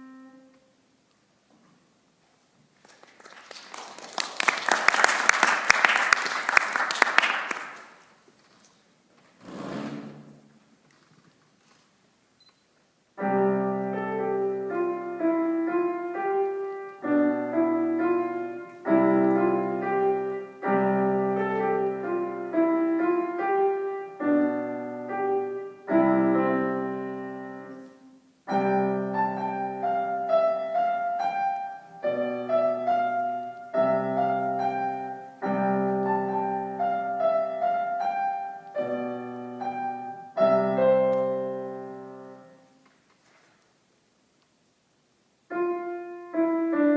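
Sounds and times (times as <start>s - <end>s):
piano chords ringing: 0.0s - 0.8s, 13.2s - 42.8s, 45.5s - 46.9s.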